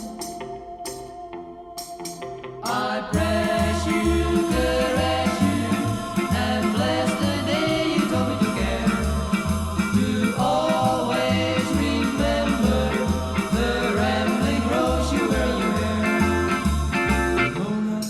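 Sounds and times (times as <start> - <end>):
pop ballad with bass beat: 3.2 - 17.6.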